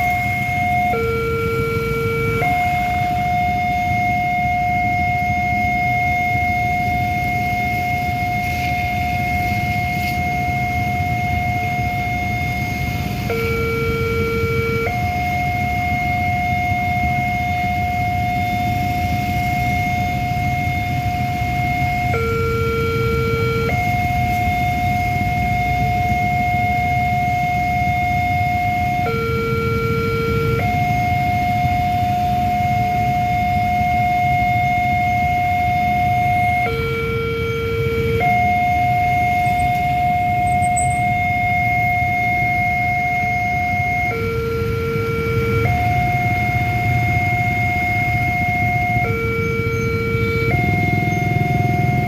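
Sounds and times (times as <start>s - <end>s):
level crossing two-tone siren: 0.0s - 52.0s.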